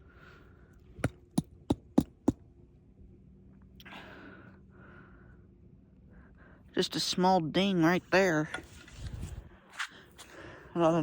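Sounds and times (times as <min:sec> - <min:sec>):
person breathing: 0:00.0 - 0:01.0, 0:03.8 - 0:06.7, 0:09.8 - 0:10.8.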